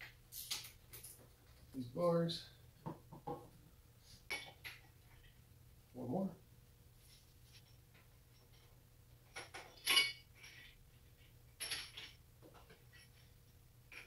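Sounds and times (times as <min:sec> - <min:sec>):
metal tools clinking: 0:00.3 - 0:01.4, 0:09.3 - 0:10.8, 0:11.6 - 0:13.3.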